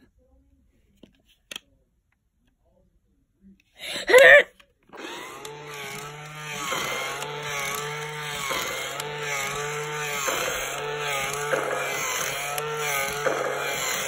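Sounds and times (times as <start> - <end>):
small electric motor whining: 5.0 - 14.0.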